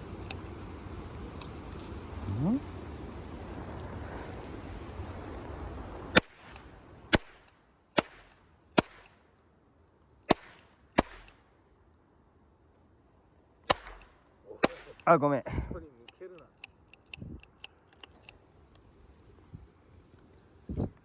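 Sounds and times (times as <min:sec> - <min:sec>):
steady hiss: 0:00.0 - 0:21.0
cap gun cracks: 0:06.2 - 0:09.2, 0:10.2 - 0:11.4, 0:13.7 - 0:15.2.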